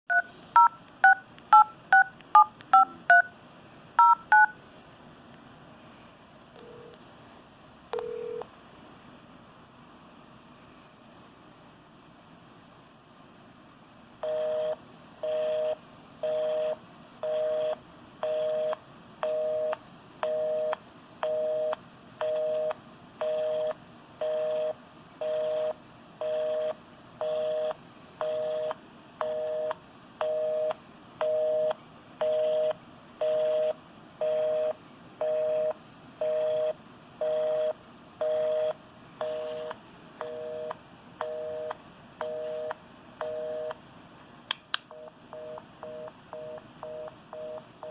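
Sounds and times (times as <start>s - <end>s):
telephone busy signal: 8.0s - 8.4s, 14.2s - 43.8s, 44.9s - 47.9s.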